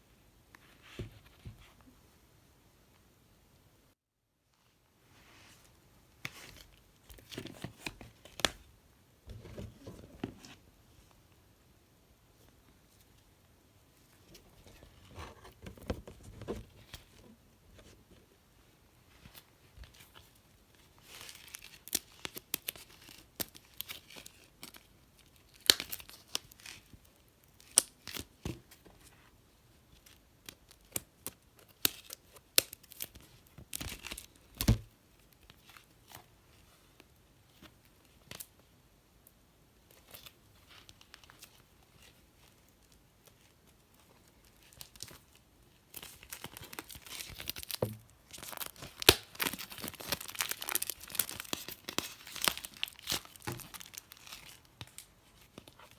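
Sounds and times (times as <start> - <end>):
packaging tearing and crinkling: 46.0 - 55.1
packaging crackling and clicking: 46.8 - 55.1.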